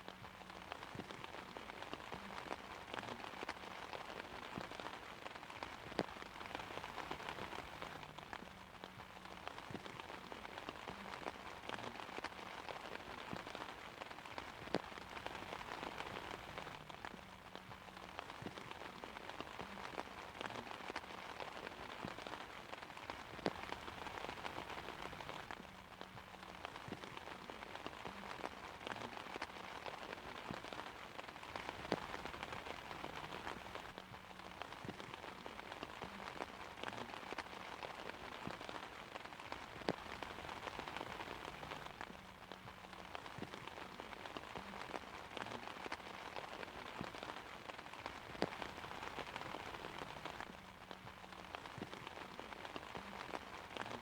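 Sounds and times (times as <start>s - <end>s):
rain on an umbrella: 0.0s - 54.0s.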